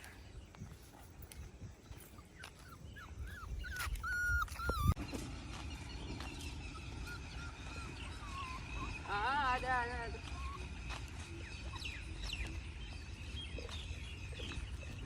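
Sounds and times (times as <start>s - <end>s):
puppy whining: 2.0s - 5.0s, 6.6s - 9.2s, 10.2s - 12.2s.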